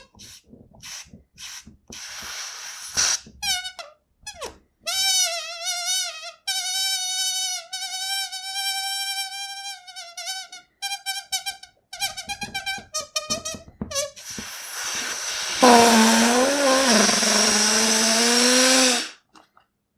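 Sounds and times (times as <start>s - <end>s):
balloon squeaking: 9.4s - 19.2s.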